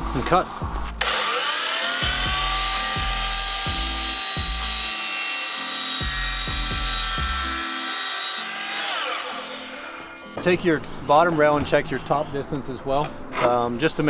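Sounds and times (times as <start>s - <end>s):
background music with beat: 0.0s - 1.1s, 2.0s - 4.9s, 6.0s - 7.6s
miter saw motor whining: 1.0s - 10.3s.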